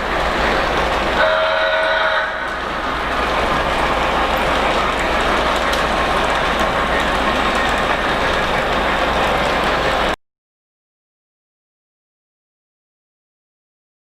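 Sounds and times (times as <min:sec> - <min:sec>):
model train rattling on track: 0:00.0 - 0:10.2.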